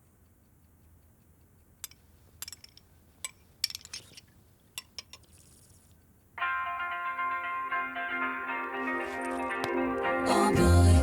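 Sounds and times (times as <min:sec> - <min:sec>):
plucked-string music: 0:06.4 - 0:11.0.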